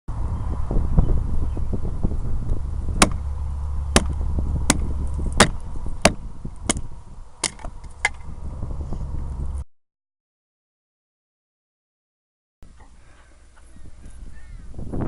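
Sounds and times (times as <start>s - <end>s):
steady low rumble: 0.1s - 9.6s
sharp knocks or cracks: 4.0s - 6.8s, 7.4s - 8.3s.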